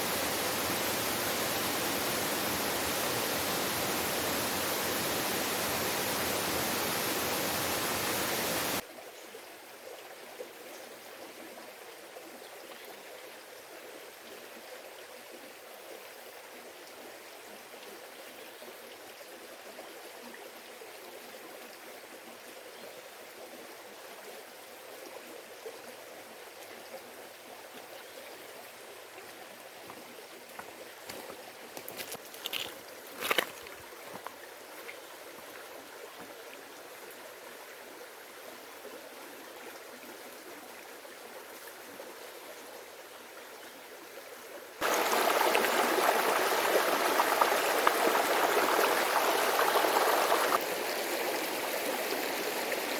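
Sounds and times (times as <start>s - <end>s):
flowing water hiss: 0.0s - 8.8s, 44.1s - 52.9s
waterfall roar: 0.0s - 8.8s, 44.8s - 50.6s.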